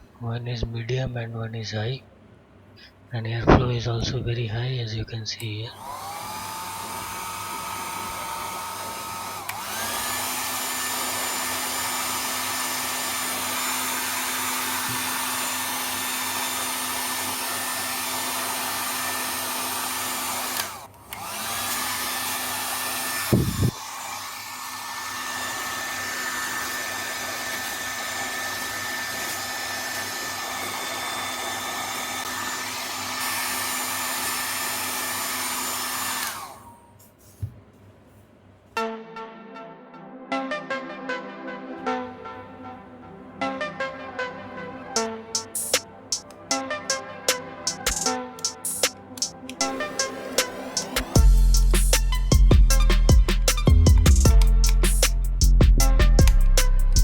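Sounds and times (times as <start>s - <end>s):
short thump: 3.5s - 3.7s, 23.3s - 23.7s, 37.4s - 37.6s
hair dryer blowing: 5.8s - 37.0s, 44.9s - 55.5s.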